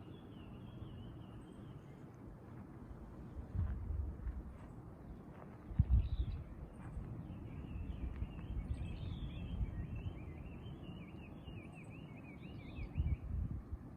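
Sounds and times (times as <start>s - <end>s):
low outdoor rumble: 0.0s - 11.7s.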